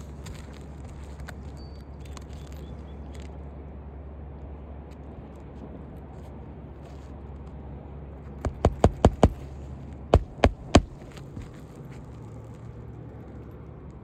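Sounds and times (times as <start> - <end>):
hammer striking nail: 8.5 - 9.5, 10.2 - 11.6
steady low hum: 8.5 - 9.6, 10.2 - 11.6.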